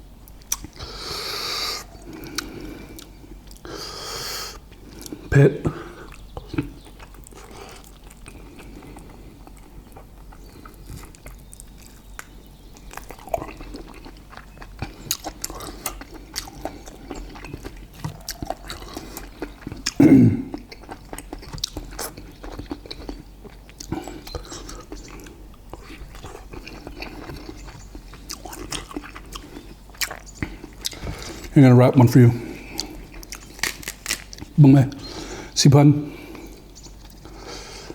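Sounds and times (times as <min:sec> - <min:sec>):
wet chewing and smacking: 0:00.3 - 0:01.0, 0:01.6 - 0:03.8, 0:04.5 - 0:31.6, 0:32.4 - 0:35.3, 0:36.3 - 0:37.9.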